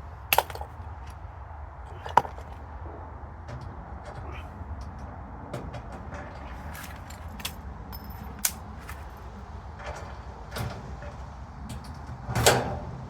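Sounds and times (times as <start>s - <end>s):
metallic clicks and knocks: 0.3s - 1.2s, 3.5s - 12.8s.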